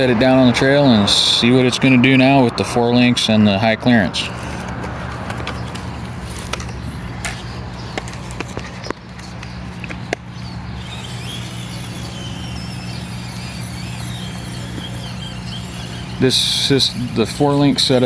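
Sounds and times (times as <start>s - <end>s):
steady low hum: 5.9s - 18.0s
small electric motor whining: 9.1s - 18.0s.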